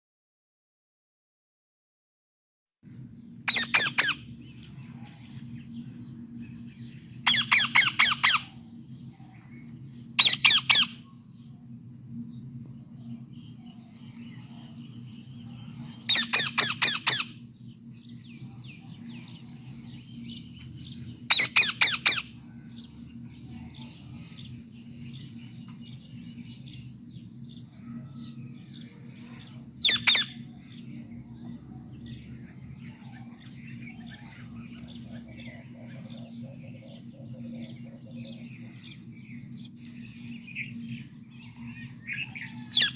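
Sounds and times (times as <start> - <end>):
steady low hum: 2.8 - 42.9
parrot squawking: 3.5 - 4.2, 7.3 - 8.5, 10.2 - 11.0, 16.1 - 17.4, 21.3 - 22.4, 29.8 - 30.4.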